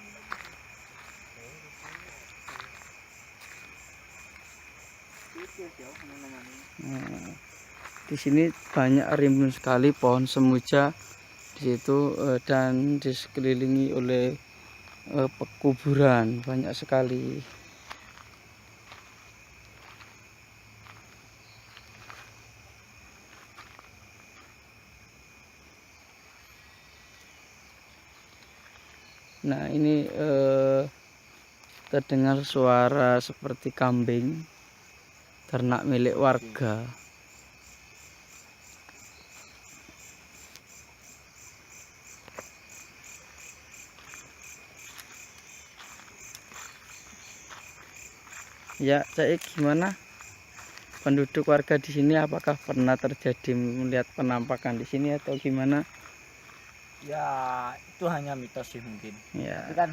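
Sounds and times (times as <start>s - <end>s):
crickets chirring: 0.0s - 59.9s.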